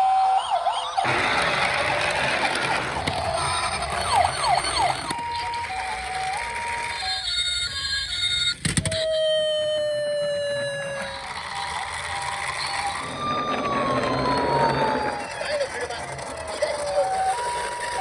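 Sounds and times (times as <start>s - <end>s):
toy electronic siren wailing: 0.0s - 18.0s
slowly falling tone: 12.4s - 17.7s.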